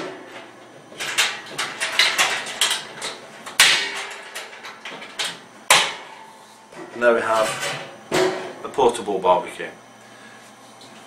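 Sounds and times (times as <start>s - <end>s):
metal smoker parts clanking: 0.0s - 8.6s.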